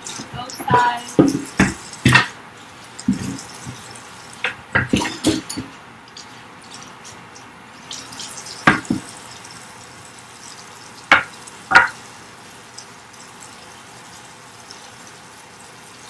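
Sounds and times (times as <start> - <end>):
water splashing in a sink: 0.0 - 16.0
knocks in a sink: 8.7 - 9.1, 11.1 - 12.0.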